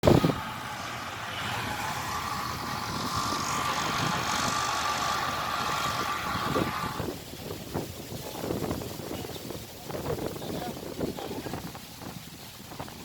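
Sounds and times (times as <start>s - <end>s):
combine harvester engine whining: 0.0s - 7.8s.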